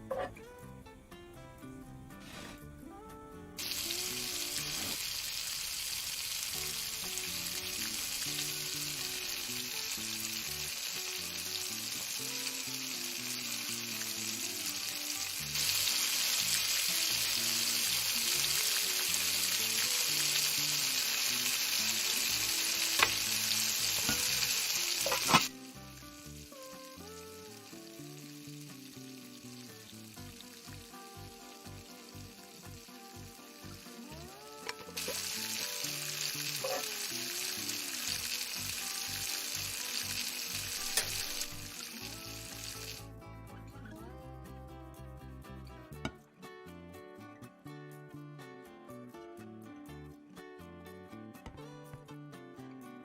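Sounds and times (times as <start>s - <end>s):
soft background music: 0.0s - 5.0s, 6.5s - 53.0s
food sizzling in a frying pan: 3.6s - 43.1s.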